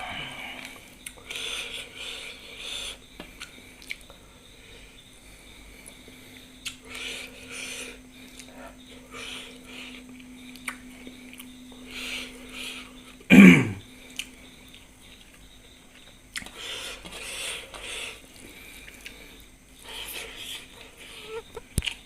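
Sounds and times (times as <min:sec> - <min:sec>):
soft breathing sounds: 0:00.0 - 0:15.3, 0:16.4 - 0:21.6
person coughing: 0:13.3 - 0:13.8.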